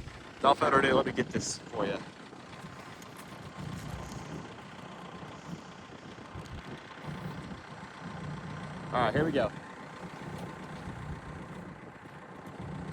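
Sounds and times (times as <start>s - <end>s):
diesel engine idling: 0.0s - 12.9s.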